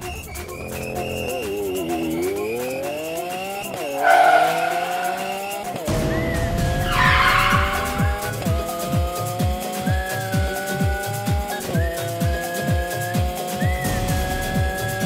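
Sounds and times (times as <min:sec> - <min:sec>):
car engine revving: 0:00.7 - 0:09.7
tyres screeching: 0:03.7 - 0:08.5.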